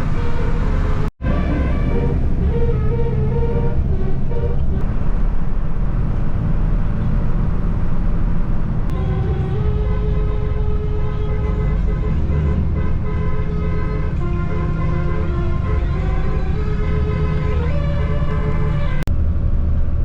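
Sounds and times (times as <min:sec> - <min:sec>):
bus horn playing musical notes: 0:00.0 - 0:04.9, 0:08.9 - 0:19.1
bus engine rumble: 0:00.0 - 0:20.0.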